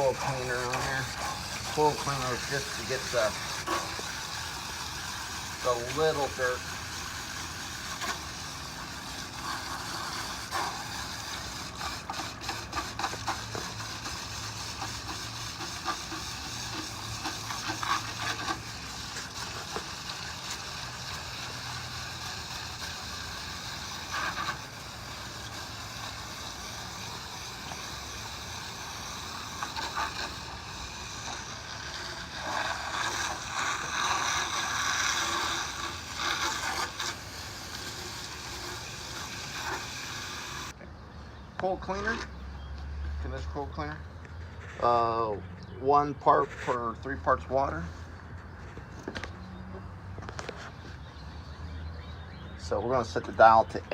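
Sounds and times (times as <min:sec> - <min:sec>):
hose water spraying: 0:00.0 - 0:40.8.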